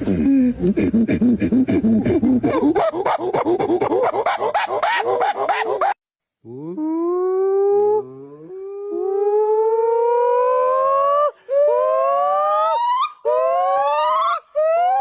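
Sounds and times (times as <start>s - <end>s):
gibbon calling: 2.5s - 6.0s, 11.0s - 15.0s.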